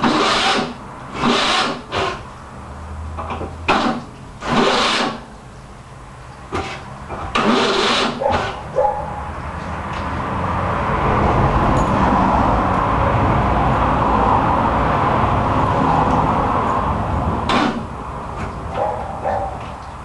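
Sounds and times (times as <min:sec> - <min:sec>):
car engine cranking: 0:06.5 - 0:08.8.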